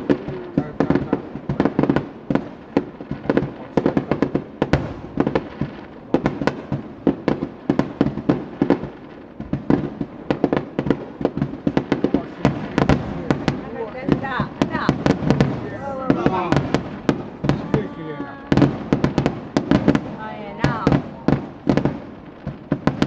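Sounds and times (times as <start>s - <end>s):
fireworks bangs: 0.0s - 23.0s.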